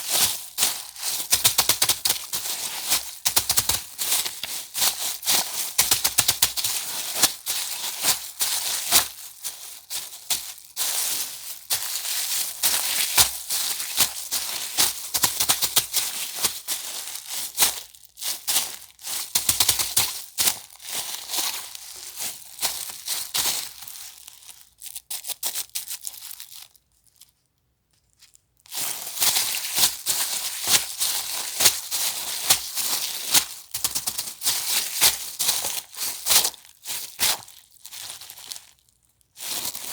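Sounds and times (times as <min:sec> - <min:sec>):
plastic bag crinkling: 0:00.0 - 0:24.7.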